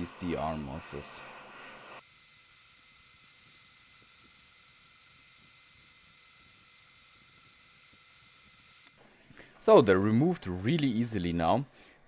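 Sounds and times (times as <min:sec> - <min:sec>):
hot air blower hissing: 0:00.0 - 0:09.0.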